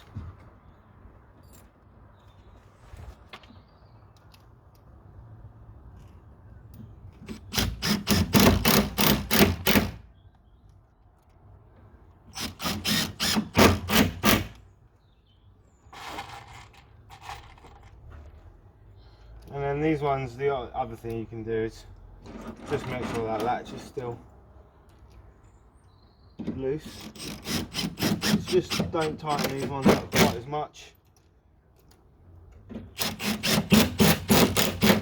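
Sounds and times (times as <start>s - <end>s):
impact driver driving screws: 7.2s - 10.0s, 12.4s - 14.6s, 26.8s - 30.4s, 33.0s - 35.0s.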